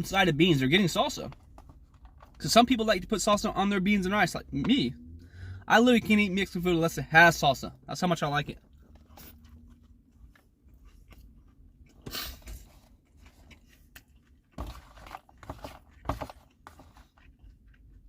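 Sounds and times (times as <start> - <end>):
crunching handling noises: 8.6 - 18.0
person chewing food: 8.6 - 18.0.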